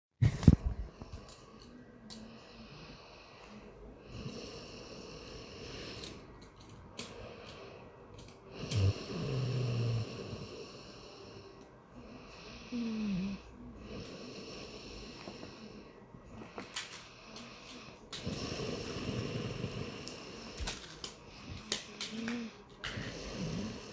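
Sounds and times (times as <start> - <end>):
man snoring: 4.0 - 6.2, 8.5 - 15.9, 17.2 - 20.6, 22.2 - 23.9.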